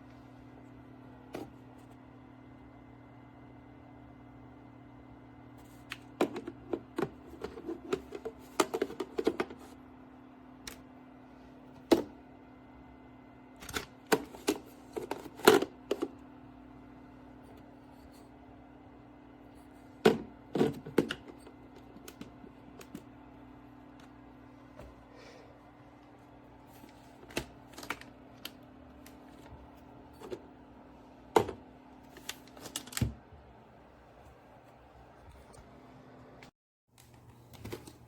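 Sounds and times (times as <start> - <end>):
steady low hum: 0.0 - 38.0.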